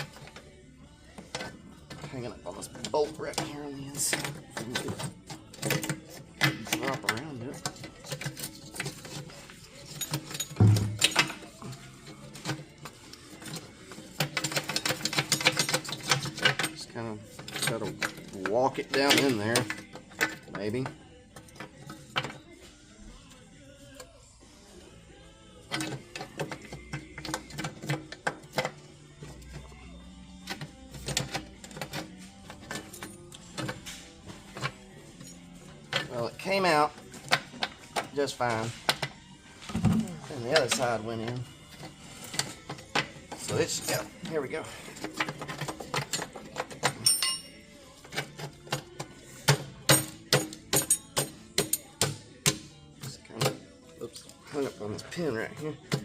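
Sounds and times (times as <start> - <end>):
metallic clinks and taps: 46.8 - 47.6, 49.9 - 52.1.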